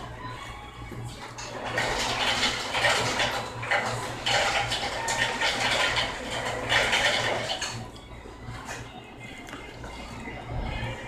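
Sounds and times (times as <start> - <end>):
utensils clattering: 1.2 - 8.0.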